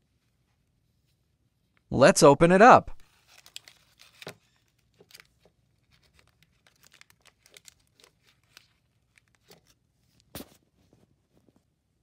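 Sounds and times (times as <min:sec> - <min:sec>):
plastic wrapper crinkling: 0:03.0 - 0:09.8.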